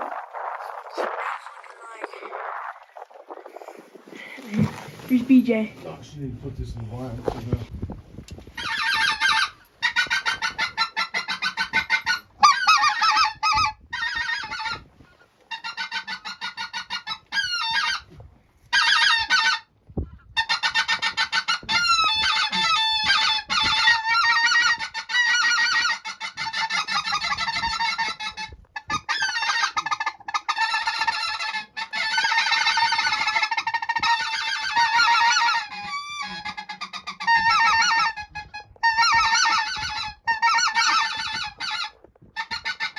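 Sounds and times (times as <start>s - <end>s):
flock of geese honking: 20.5s - 42.9s.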